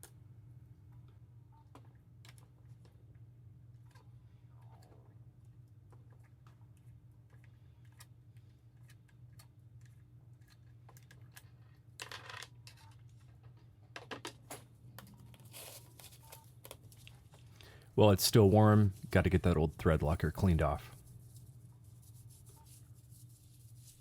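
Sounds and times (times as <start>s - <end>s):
low steady hum: 14.5s - 24.0s.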